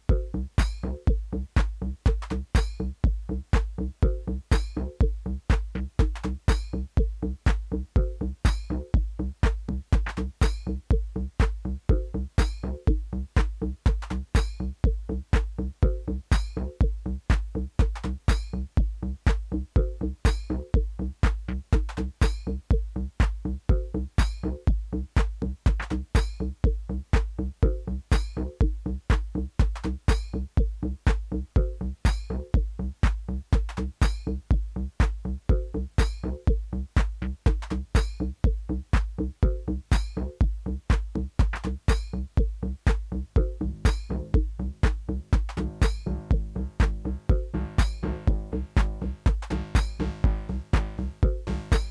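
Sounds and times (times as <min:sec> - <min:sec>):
kick drum beat: 0:00.0 - 0:51.9
hi-hats: 0:36.0 - 0:51.9
synth bass riff: 0:43.4 - 0:51.9.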